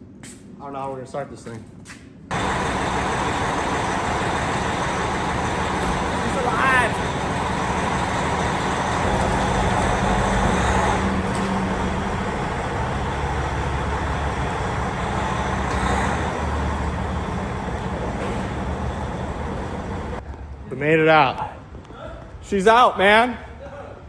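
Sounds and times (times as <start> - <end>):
diesel truck engine droning: 2.3 - 20.2.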